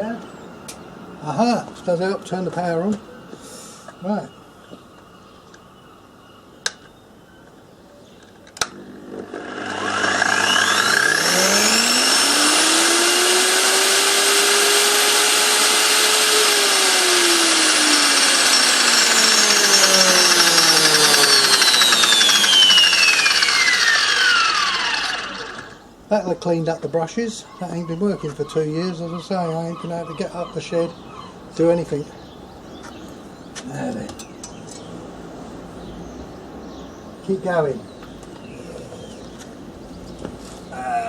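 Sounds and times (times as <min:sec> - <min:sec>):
angle grinder motor whining: 0:08.7 - 0:25.8.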